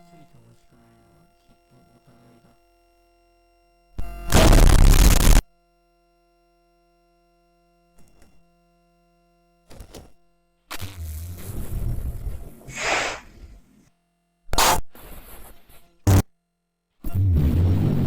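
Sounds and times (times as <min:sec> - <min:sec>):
faint steady hum: 0:00.0 - 0:09.7
loud noisy burst: 0:04.3 - 0:05.4, 0:12.7 - 0:13.4
sharp hiss: 0:12.7 - 0:13.4
rough noise: 0:12.7 - 0:13.6.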